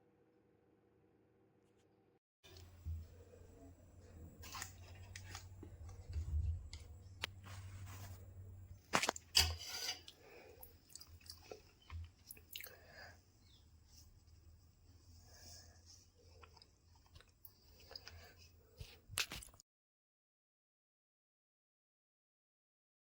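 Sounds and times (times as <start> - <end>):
person chewing: 16.4 - 19.6.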